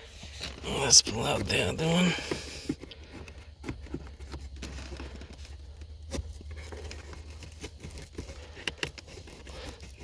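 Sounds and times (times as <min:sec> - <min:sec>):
air filter crinkling: 0:00.0 - 0:10.0
plastic scraping: 0:00.0 - 0:10.0.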